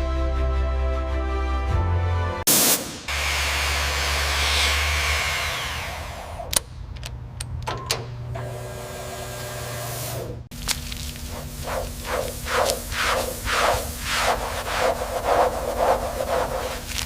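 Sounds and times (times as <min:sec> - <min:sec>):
machine rushing hiss: 0:02.5 - 0:05.0, 0:11.2 - 0:17.0.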